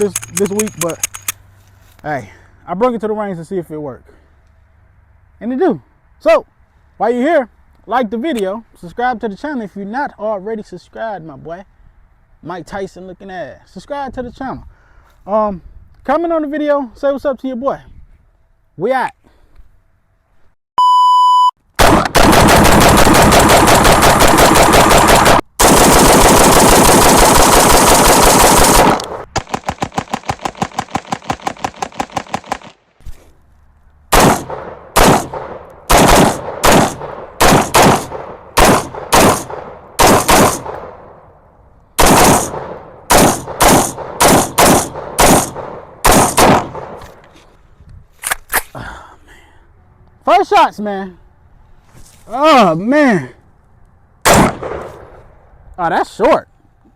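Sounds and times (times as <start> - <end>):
short electronic beep: 20.8 - 21.6
rapid automatic gunfire: 21.8 - 32.8, 34.1 - 40.8, 42.0 - 46.8
single gunshots with echo: 34.1 - 41.0, 42.0 - 47.0, 54.3 - 55.2.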